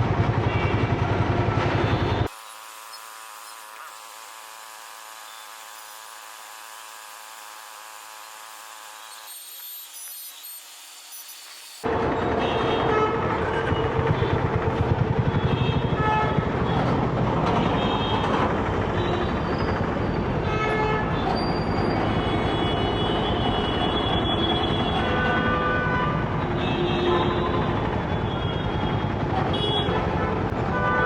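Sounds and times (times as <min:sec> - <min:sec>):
road traffic: 0:00.0 - 0:03.0, 0:11.2 - 0:31.0
vehicle horn toots: 0:22.0 - 0:28.9, 0:29.5 - 0:31.0.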